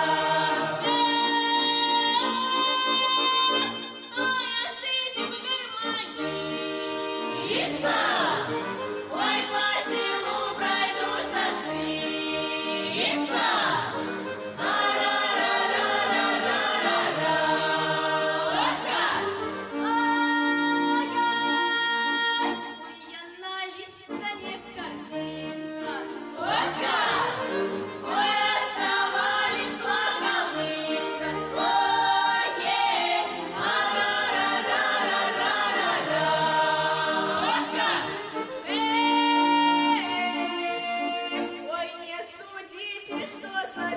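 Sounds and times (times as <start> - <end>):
children singing together: 7.2 - 13.9, 14.6 - 19.4, 26.4 - 27.5, 28.1 - 38.5.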